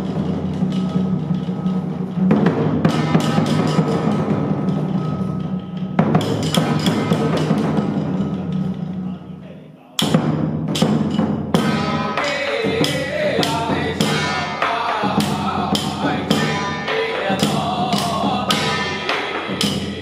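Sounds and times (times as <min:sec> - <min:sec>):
cymbal or gong strikes: 0:11.6 - 0:20.0.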